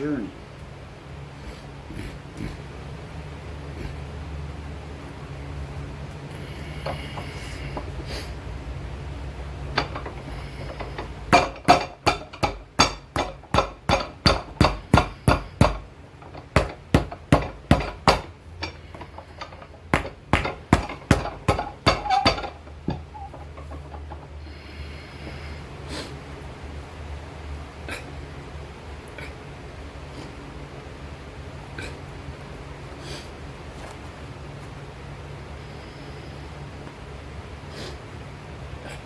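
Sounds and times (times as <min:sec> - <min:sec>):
steady low hum: 0:00.0 - 0:39.0
hammer pounding boot sole: 0:11.3 - 0:15.8, 0:16.6 - 0:18.3, 0:19.9 - 0:22.5.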